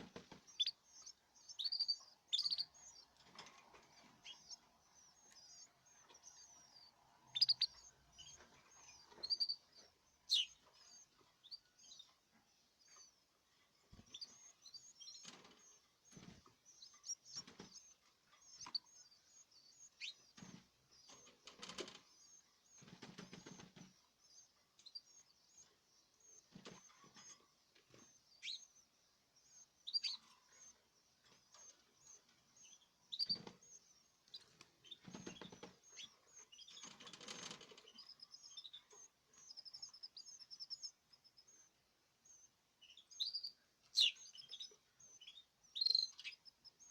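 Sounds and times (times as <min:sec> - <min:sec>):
wings fluttering in a cage: 0:00.0 - 0:11.5, 0:13.9 - 0:18.9, 0:20.0 - 0:24.1, 0:26.5 - 0:28.6, 0:33.1 - 0:40.0
canaries chirping: 0:00.0 - 0:46.9.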